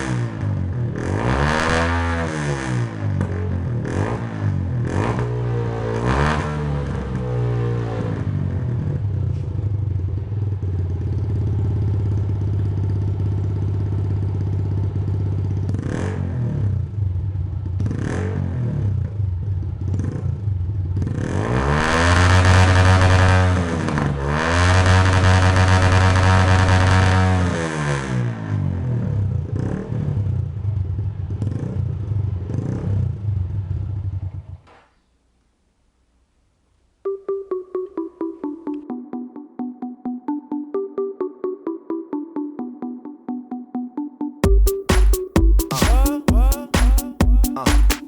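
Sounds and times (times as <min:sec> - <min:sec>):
motorcycle engine idling and revving: 0:00.0 - 0:34.9.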